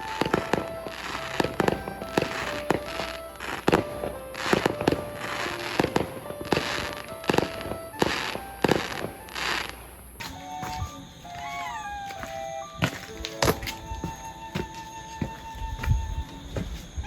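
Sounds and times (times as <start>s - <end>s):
fireworks bangs: 0.0s - 11.9s
crackling hiss of fireworks: 0.0s - 14.3s.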